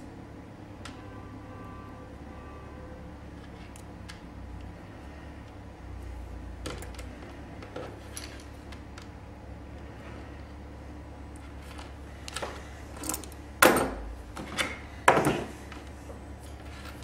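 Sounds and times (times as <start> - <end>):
low steady hum: 0.0 - 17.0
small wire parts clicking: 3.4 - 4.8, 6.6 - 10.6, 11.3 - 17.0.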